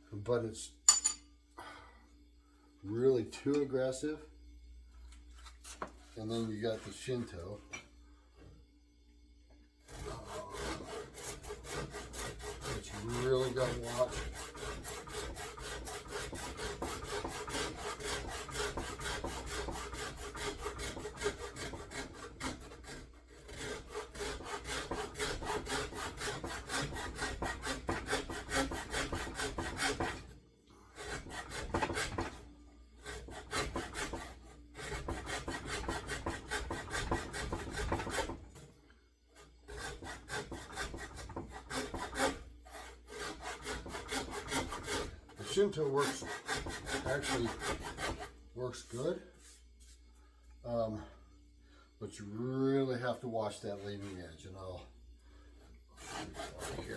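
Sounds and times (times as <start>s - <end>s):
rasp scraping wooden handle: 9.9s - 30.3s, 31.0s - 32.4s, 33.0s - 38.6s, 39.4s - 49.6s, 56.0s - 56.9s.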